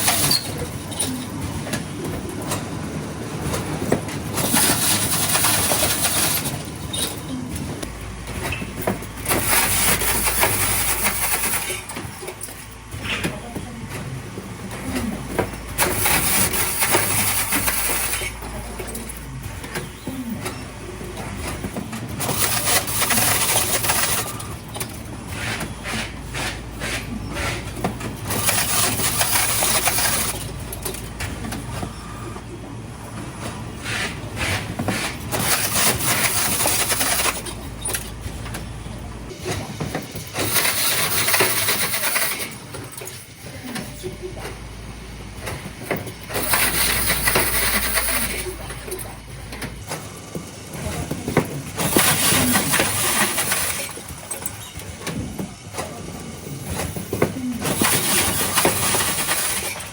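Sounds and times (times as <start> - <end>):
taping machine motor hum: 14.1 - 43.5, 44.5 - 59.9.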